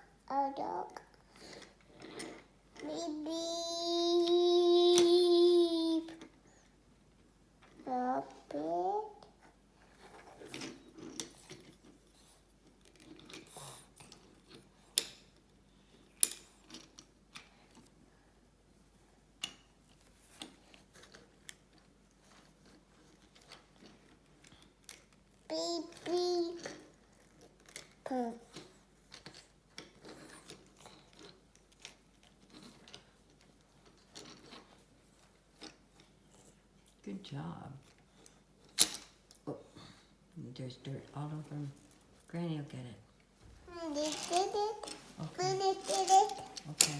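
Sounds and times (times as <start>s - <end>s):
toy truck clicking and knocking: 22.4s - 34.8s, 43.7s - 46.9s.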